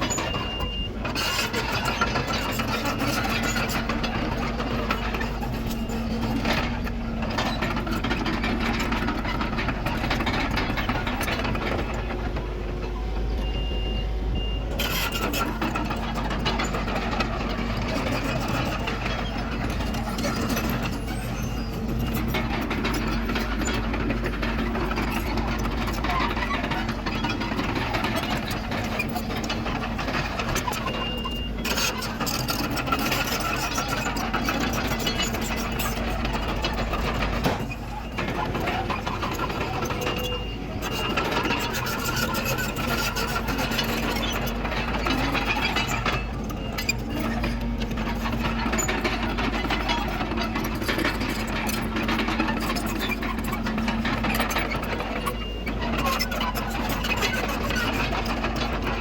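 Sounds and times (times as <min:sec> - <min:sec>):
reversing alarm beeps: 0:00.0 - 0:03.6, 0:13.2 - 0:16.0, 0:30.4 - 0:34.0, 0:36.3 - 0:42.5
bulldozer diesel engine running: 0:00.0 - 0:59.0.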